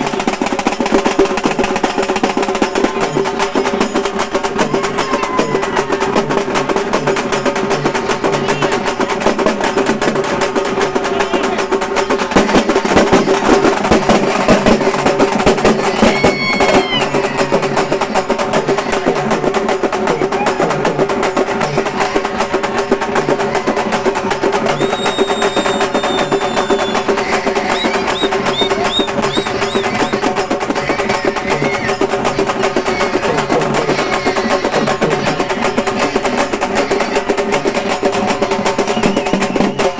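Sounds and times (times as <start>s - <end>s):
frame drums drum roll: 0.0s - 39.9s
short high whistles: 24.8s - 30.2s, 38.8s - 39.9s.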